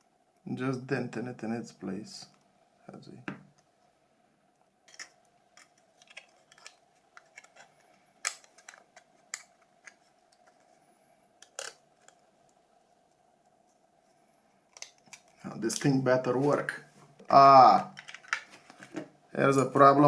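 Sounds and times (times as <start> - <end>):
faint steady hum: 0.0 - 20.0
plastic parts clicking: 4.9 - 10.6, 11.4 - 12.2, 14.7 - 15.9, 17.2 - 19.0.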